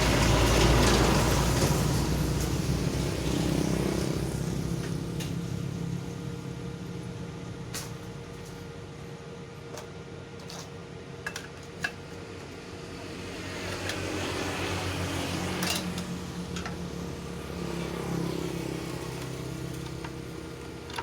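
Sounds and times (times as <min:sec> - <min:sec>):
low engine hum: 0:00.0 - 0:08.4.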